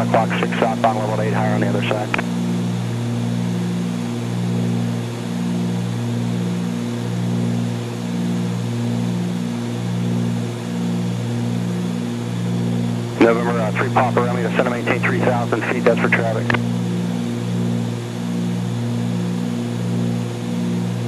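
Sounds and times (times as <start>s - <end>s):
twin propeller engines droning: 0.0s - 21.0s.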